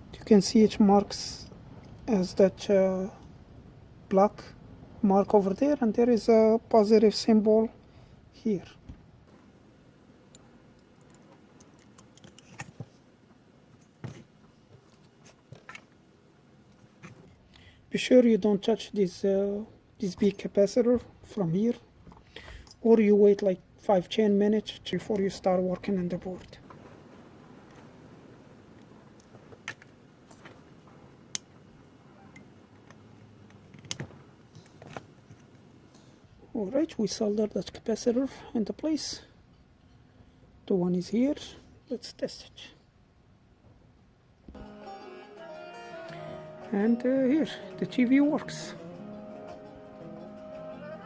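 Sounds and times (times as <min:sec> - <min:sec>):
low steady hiss: 0:00.0 - 0:51.0
small parts clicking: 0:10.3 - 0:12.8.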